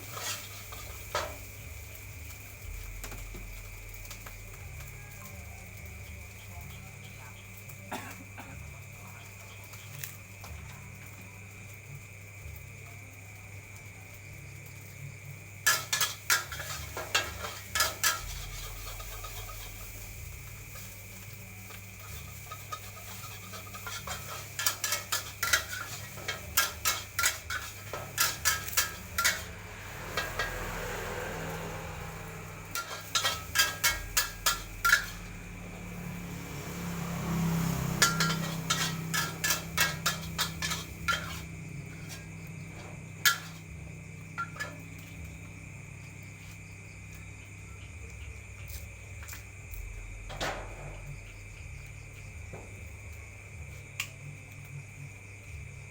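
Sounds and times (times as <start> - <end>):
metal spatula scraping a wok: 0.0 - 1.9, 15.6 - 45.2
food sizzling: 0.0 - 47.3.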